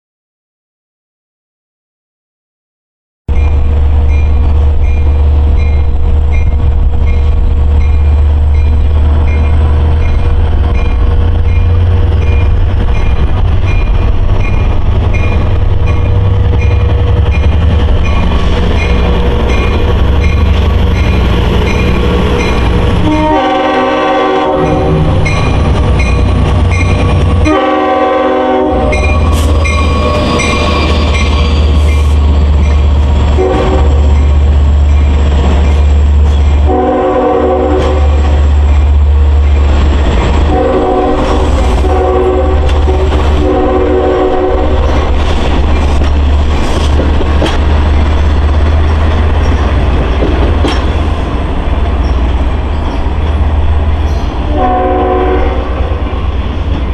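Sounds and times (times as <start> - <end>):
diesel locomotive engine rumble: 3.3 - 56.9
locomotive horn blasts: 22.8 - 25.3, 26.9 - 30.4, 33.4 - 34.1, 36.6 - 38.4, 40.5 - 44.9, 54.5 - 56.3.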